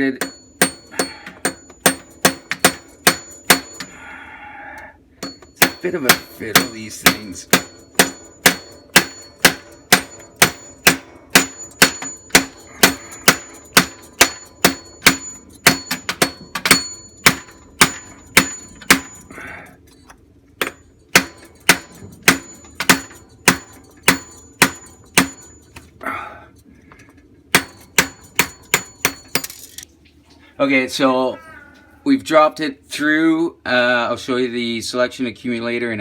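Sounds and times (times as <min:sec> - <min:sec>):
hammer tapping metal punch: 0:00.0 - 0:03.9, 0:05.2 - 0:19.3, 0:20.6 - 0:25.8, 0:27.5 - 0:29.8.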